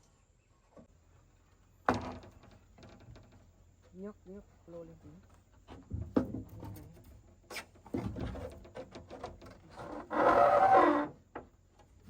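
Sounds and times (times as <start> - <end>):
wooden poles clattering: 7.8 - 11.0
loud rasping scrape: 9.9 - 11.1.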